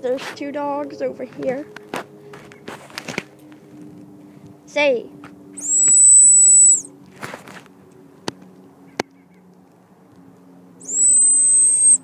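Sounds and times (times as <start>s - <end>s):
high-pitched dog whistle: 5.6s - 6.9s, 10.8s - 12.0s.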